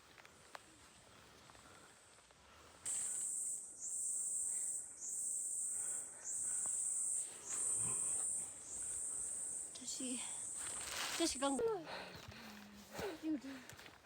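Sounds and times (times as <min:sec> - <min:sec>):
insect chirring: 0:02.8 - 0:11.6.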